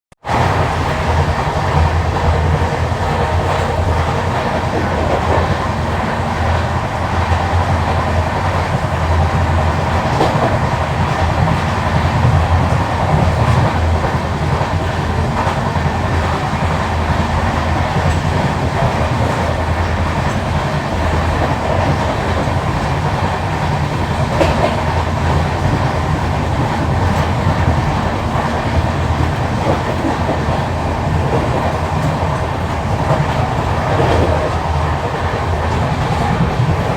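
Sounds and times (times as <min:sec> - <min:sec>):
train coach rumbling: 0:00.2 - 0:36.9
wheel-on-rail clatter: 0:07.8 - 0:36.9.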